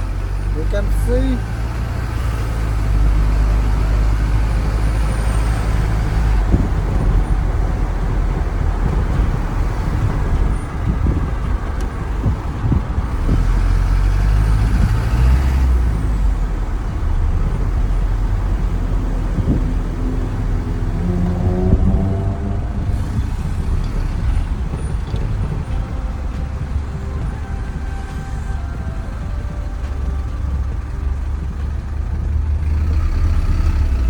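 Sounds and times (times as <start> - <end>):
low engine rumble: 0.0 - 34.0
road noise: 0.0 - 34.0
wind rushing: 1.4 - 32.5.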